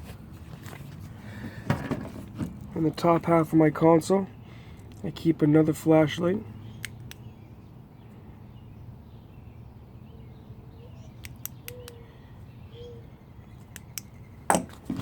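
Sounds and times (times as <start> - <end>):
small sharp clicks: 6.8 - 7.3, 11.2 - 12.0, 13.6 - 14.2.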